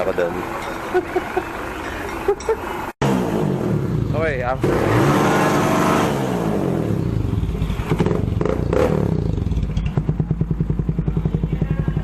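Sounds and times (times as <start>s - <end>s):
motorcycle engine revving: 3.0s - 12.0s.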